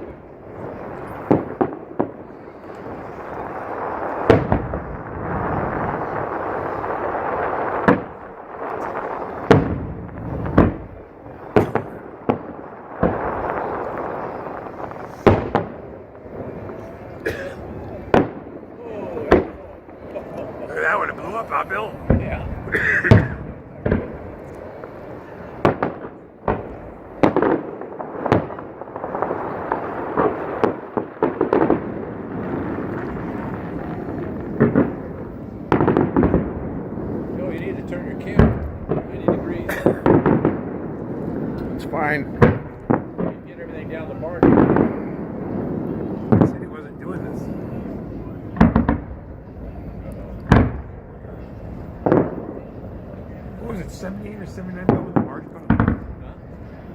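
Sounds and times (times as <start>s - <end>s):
fireworks bursting with bangs: 0.0s - 56.9s
fireworks crackling: 0.0s - 56.9s.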